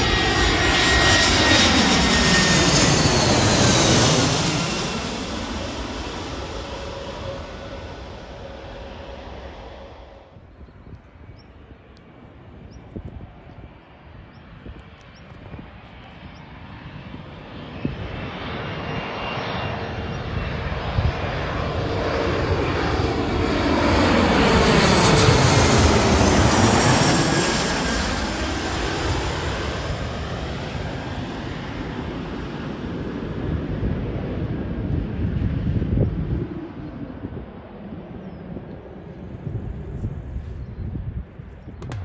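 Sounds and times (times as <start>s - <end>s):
jet airliner engines passing: 0.0s - 42.0s.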